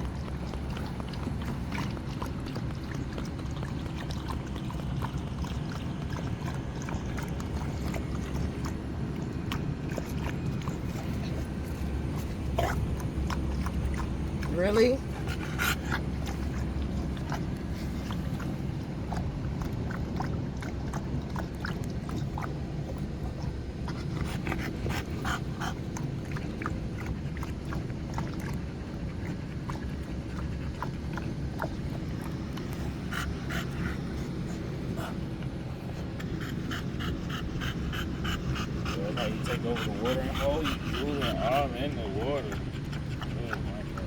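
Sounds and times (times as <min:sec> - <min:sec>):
dog lapping water: 0:00.0 - 0:44.0
dog panting and snorting: 0:00.0 - 0:44.0
steady low hum: 0:00.0 - 0:44.0.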